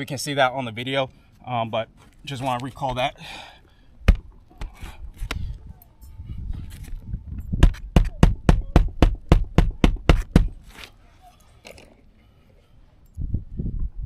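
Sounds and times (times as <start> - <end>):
nails driven into shingles: 7.6 - 10.6.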